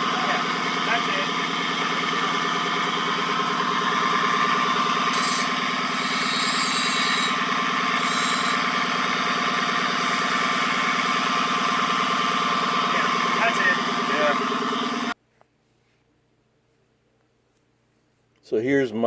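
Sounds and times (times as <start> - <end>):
car engine: 0.0 - 5.2, 8.8 - 15.2
drivetrain whine: 0.0 - 5.9, 8.7 - 15.2.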